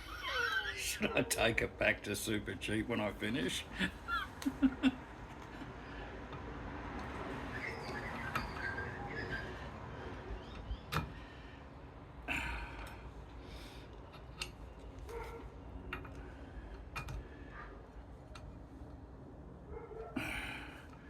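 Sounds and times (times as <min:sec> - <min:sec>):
light clicks and knocks of tools: 0:12.8 - 0:19.0.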